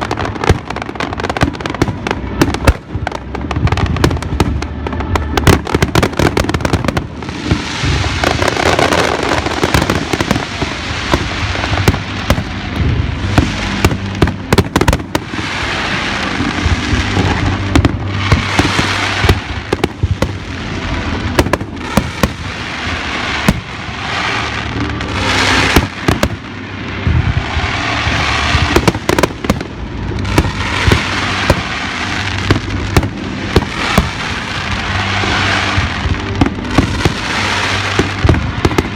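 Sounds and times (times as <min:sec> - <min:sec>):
fireworks bangs: 0:00.0 - 0:38.9
fireworks crackling: 0:00.0 - 0:38.9.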